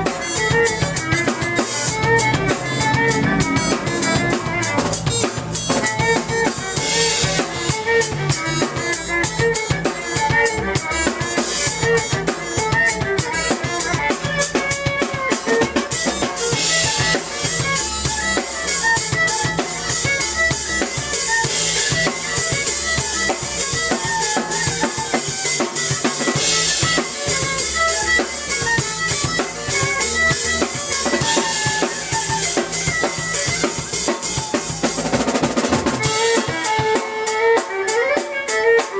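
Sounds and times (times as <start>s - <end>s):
driving drum beat: 0.0s - 38.9s
keyboard bass line and melody: 0.0s - 38.9s
cymbal crashes: 1.7s - 6.0s.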